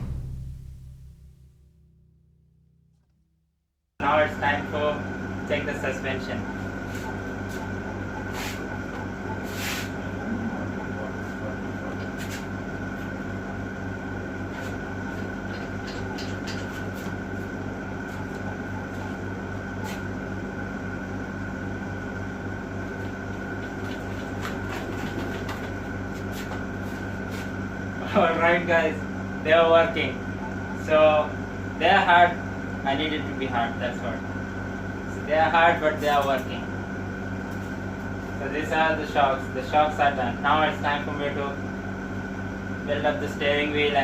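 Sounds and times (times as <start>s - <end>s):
machine hum: 0.0s - 3.1s.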